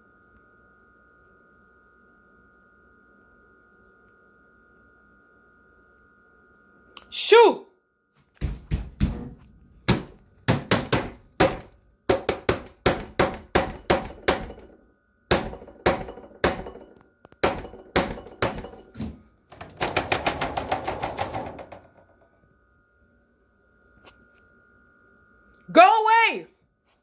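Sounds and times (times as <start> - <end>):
loud knocking: 8.4 - 22.3.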